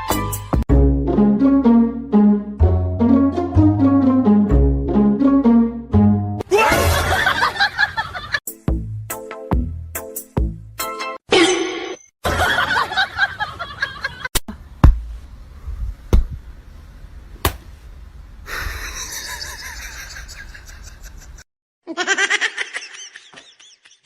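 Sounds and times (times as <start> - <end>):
sharp knocks or smacks: 17.4 - 17.7
person laughing: 18.5 - 24.0.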